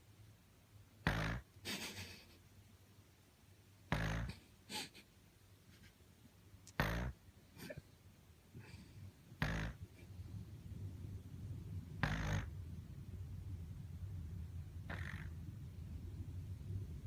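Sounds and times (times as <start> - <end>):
baby snoring: 1.1 - 1.5, 3.9 - 4.4, 6.7 - 7.2, 9.4 - 9.8, 12.0 - 12.5, 14.9 - 15.3
soft breathing: 8.5 - 9.2.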